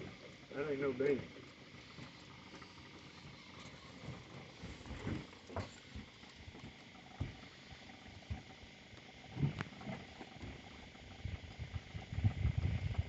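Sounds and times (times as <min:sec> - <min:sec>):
soft knocks on a boat: 0:07.2 - 0:07.4.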